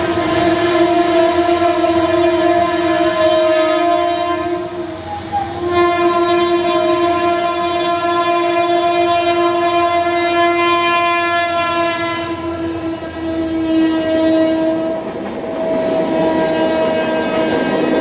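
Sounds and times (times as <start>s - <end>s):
train horn blast: 0.0s - 18.0s
rushing noise: 14.9s - 18.0s.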